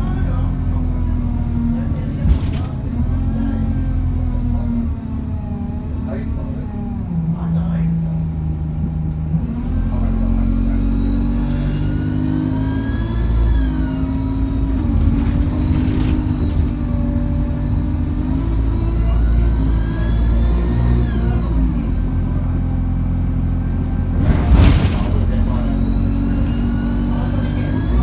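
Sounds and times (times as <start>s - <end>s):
bus diesel engine accelerating: 0.0s - 28.0s
turbocharger whine: 9.5s - 28.0s.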